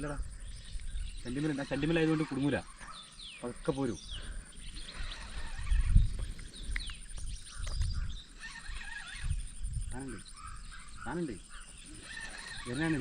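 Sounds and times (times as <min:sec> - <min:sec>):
birds chirping and whistling: 0:00.0 - 0:13.0
low rumbles on microphone: 0:04.7 - 0:08.2.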